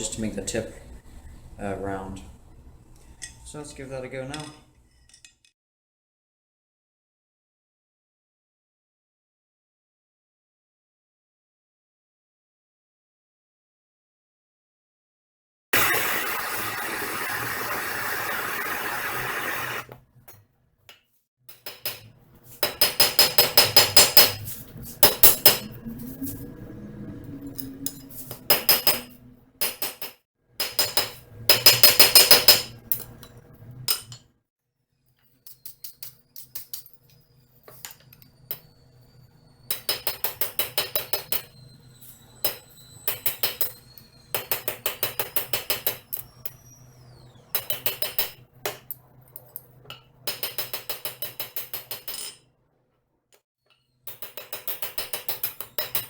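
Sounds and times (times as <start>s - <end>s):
hammer striking steel on anvil: 21.6s - 25.7s, 28.5s - 32.8s.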